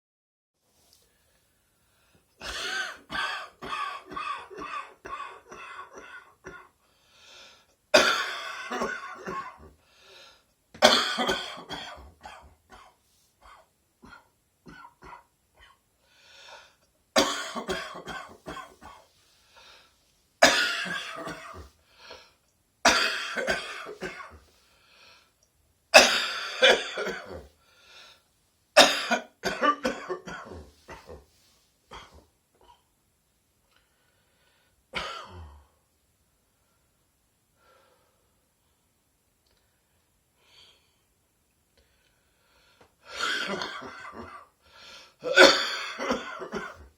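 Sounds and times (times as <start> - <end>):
person coughing: 2.4 - 6.8, 8.0 - 9.7, 10.8 - 15.8, 17.2 - 19.0, 20.4 - 21.7, 22.9 - 24.4, 26.0 - 27.5, 28.8 - 32.9, 35.0 - 35.7, 43.1 - 44.5, 45.2 - 46.9
throat clearing: 29.0 - 31.3.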